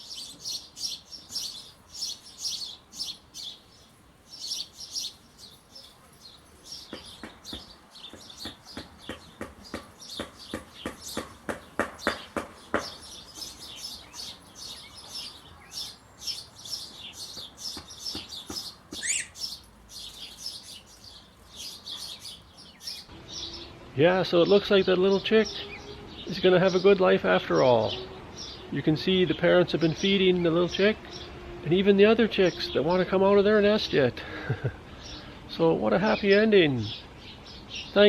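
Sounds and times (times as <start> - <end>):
small songbirds chirping: 0.0 - 38.0
sharp clicking bird notes: 6.7 - 15.9, 16.7 - 20.8
downward-sweeping bird call: 12.0 - 23.8.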